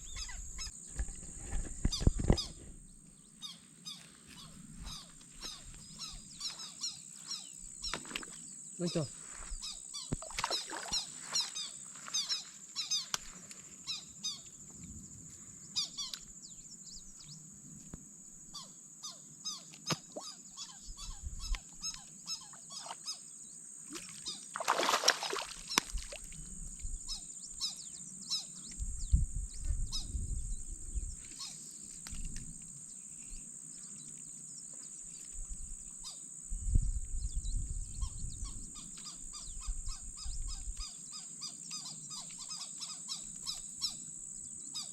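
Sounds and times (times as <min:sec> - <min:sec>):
small birds chirping: 0:00.0 - 0:14.6, 0:18.5 - 0:25.0, 0:26.8 - 0:32.3, 0:37.1 - 0:44.9.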